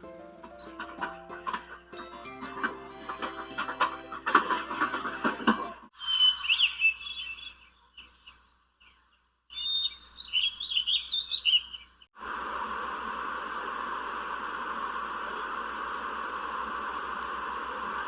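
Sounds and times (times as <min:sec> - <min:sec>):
chirping bird calls: 0:06.0 - 0:12.1
steady even hiss: 0:12.2 - 0:18.0.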